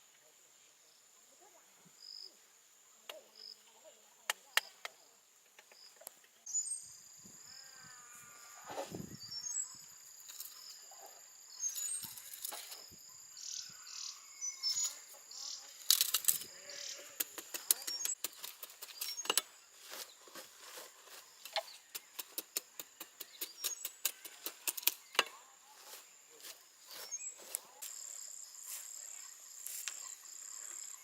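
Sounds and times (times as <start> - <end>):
bird chirps: 5.7 - 7.1, 9.1 - 15.9, 16.6 - 18.2, 18.8 - 20.3, 21.4 - 25.2
sharp clicks and taps: 17.2 - 19.5, 21.4 - 25.3.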